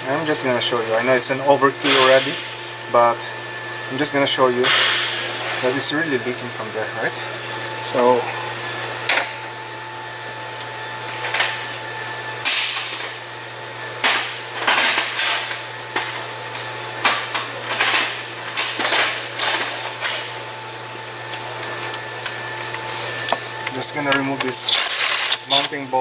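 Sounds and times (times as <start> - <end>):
steady low hum: 0.0 - 10.4.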